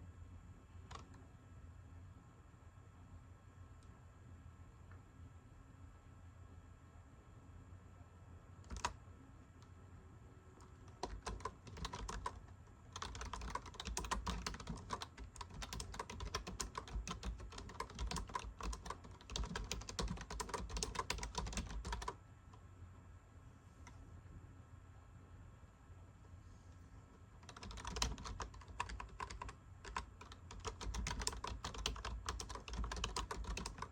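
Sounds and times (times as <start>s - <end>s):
typing on keyboard: 0.9s - 1.1s, 8.6s - 9.0s, 10.6s - 22.2s, 27.4s - 33.9s.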